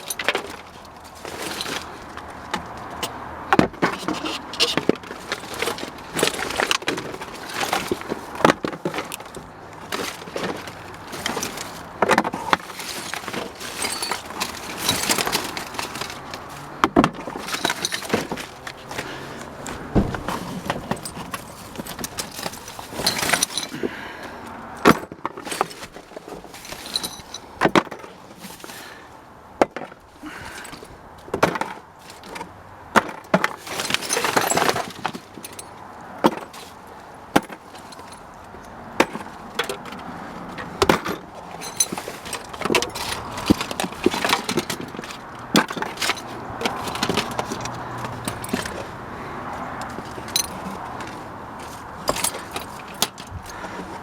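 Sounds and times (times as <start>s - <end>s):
scraping rustle: 0.0s - 23.8s, 25.4s - 29.0s
scrap clattering in a dumpster: 0.0s - 38.3s, 38.9s - 54.0s.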